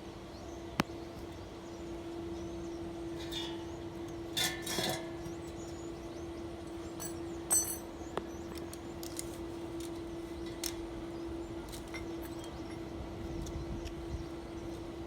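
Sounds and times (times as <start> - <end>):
steady hum: 0.0 - 15.0
metal pieces clinking: 7.0 - 7.9.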